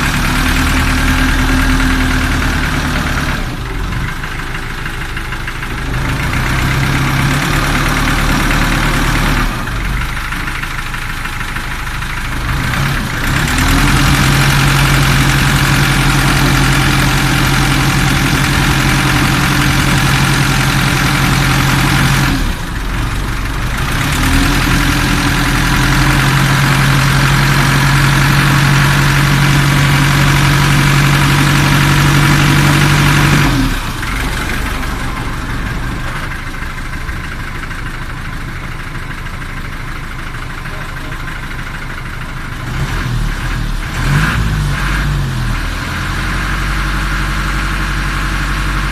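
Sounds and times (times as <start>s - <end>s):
boat engine running: 13.6s - 37.4s.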